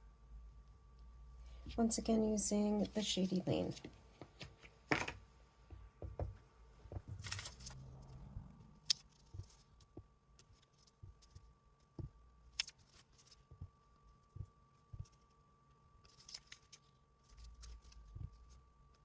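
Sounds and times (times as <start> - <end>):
paper rustle: 7.1 - 7.8, 12.6 - 13.5, 16.0 - 18.6.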